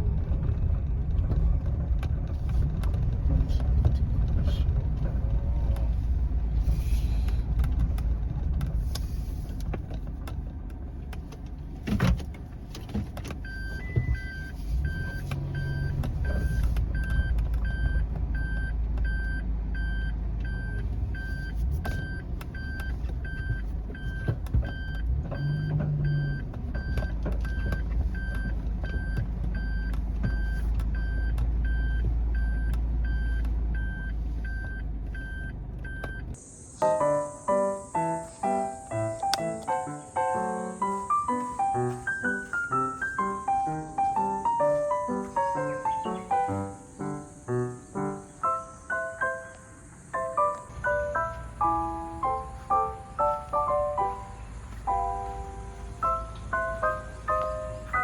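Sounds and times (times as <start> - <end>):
car engine and road rumble: 0.0 - 58.0
electronic beep: 13.4 - 39.5.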